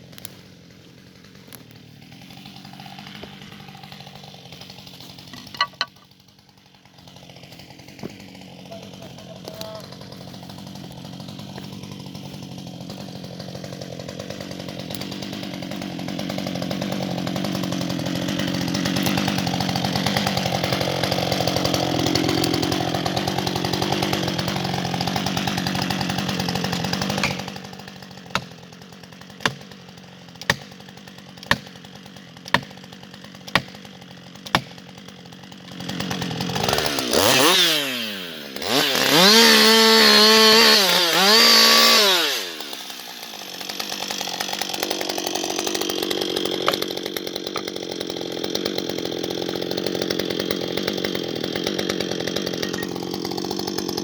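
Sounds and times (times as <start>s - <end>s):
chainsaw running and revving: 0.0s - 54.0s.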